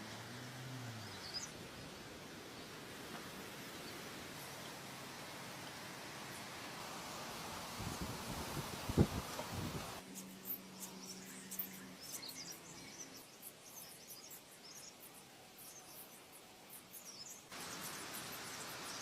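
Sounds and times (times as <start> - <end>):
small birds chirping: 0.0 - 6.5, 7.1 - 19.0
hiss: 17.0 - 19.0.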